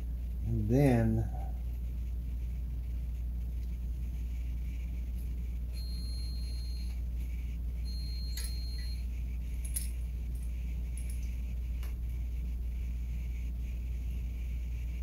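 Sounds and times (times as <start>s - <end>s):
steady low hum: 0.0s - 15.0s
small metallic clicks and rattles: 9.6s - 11.3s.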